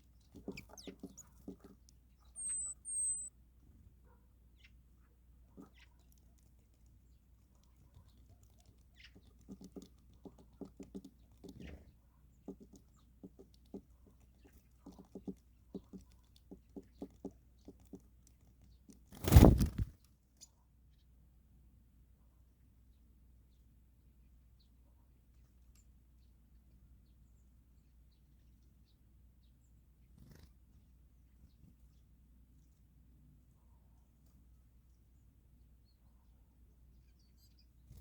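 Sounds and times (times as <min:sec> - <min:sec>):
birds pecking at feed: 0:00.0 - 0:20.2
loud rustling burst: 0:19.2 - 0:19.9.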